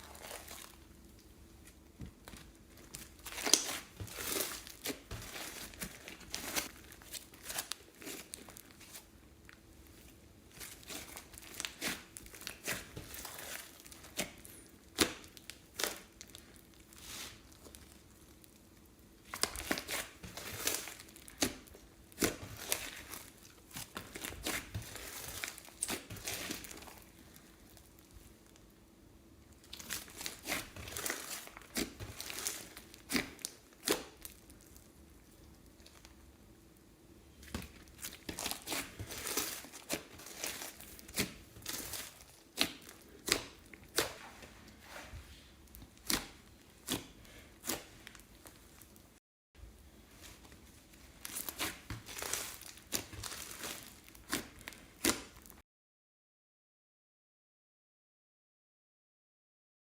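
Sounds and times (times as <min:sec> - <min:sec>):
slime squeezing with crinkly plastic: 0:00.0 - 0:28.8, 0:29.5 - 0:36.5, 0:37.3 - 0:49.2, 0:49.8 - 0:55.6.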